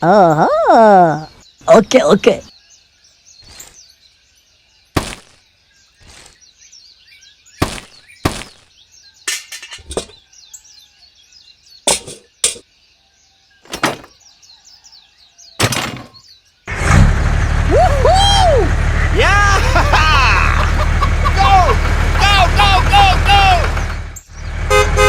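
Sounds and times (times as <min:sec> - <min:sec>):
birds chirping: 0:00.0 - 0:16.7, 0:17.7 - 0:25.0
sharp knocks and clicks: 0:15.6 - 0:16.2.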